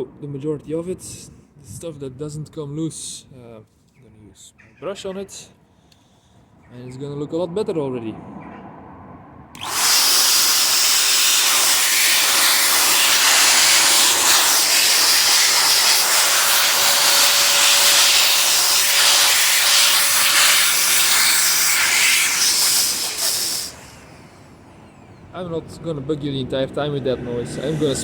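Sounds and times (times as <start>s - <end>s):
electric blower rushing air: 9.6s - 24.4s.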